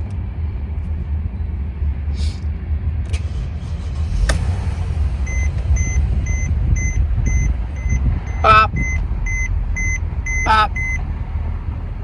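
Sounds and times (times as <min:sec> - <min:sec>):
car engine idling: 0:00.0 - 0:12.0
high electronic warning beeps: 0:05.3 - 0:11.0.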